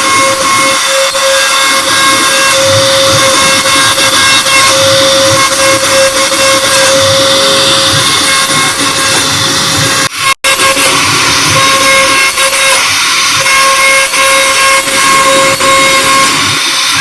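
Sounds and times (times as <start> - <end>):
router cutting with high whine: 0.0 - 17.0.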